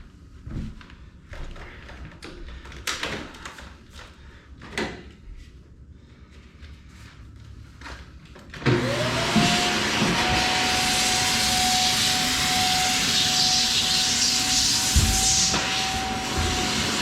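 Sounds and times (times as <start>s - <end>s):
vacuum cleaner motor whine: 8.5s - 17.0s.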